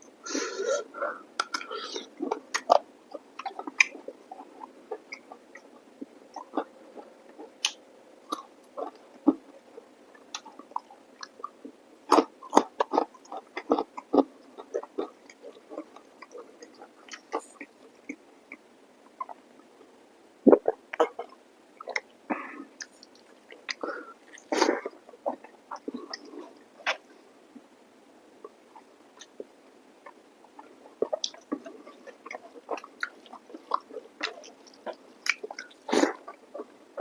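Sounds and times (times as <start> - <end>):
chewing and lip smacking: 1.4 - 9.5, 10.1 - 19.4, 22.8 - 27.1, 28.4 - 36.8.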